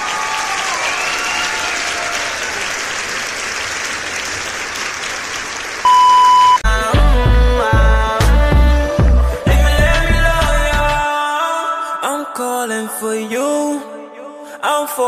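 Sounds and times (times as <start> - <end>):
crowd applauding: 0.0 - 6.6
loud steady beep: 5.9 - 6.6.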